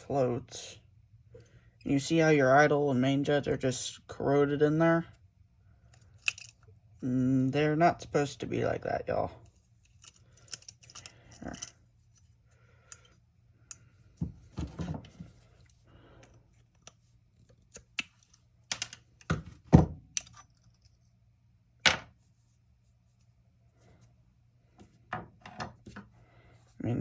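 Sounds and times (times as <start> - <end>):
metal parts clicking and knocking: 5.9 - 6.7, 9.8 - 11.8, 16.2 - 19.5, 20.1 - 21.0.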